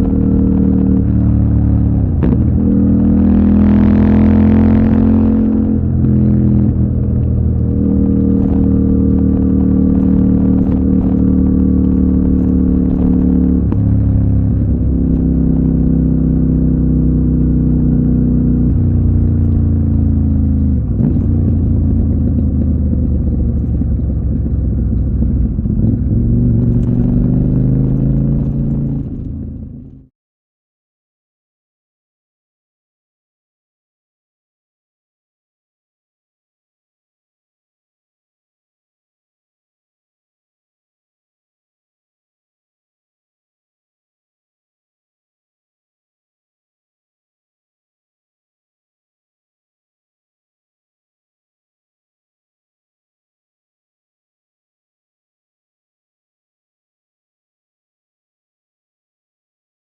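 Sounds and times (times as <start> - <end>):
motorcycle engine running: 0.0 - 30.1.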